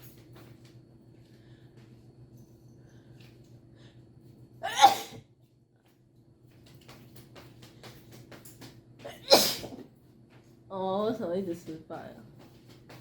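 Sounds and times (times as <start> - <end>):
person sneezing: 4.6 - 5.2, 9.1 - 9.8.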